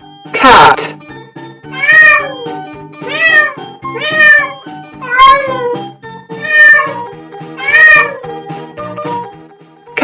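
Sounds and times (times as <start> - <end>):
background music: 0.0 - 10.0
cat meowing: 1.7 - 5.8, 6.4 - 7.0, 7.6 - 8.2.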